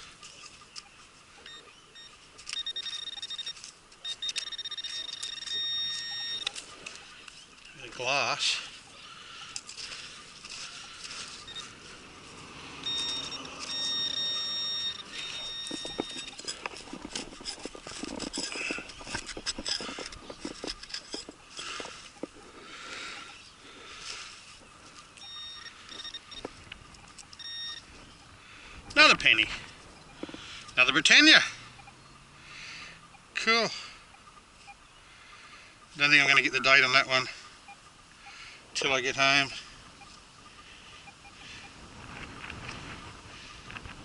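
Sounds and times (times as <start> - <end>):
metal detector beeping: 0.0 - 23.5, 24.5 - 32.1, 33.0 - 41.8
hand digger scraping ground: 9.6 - 23.2.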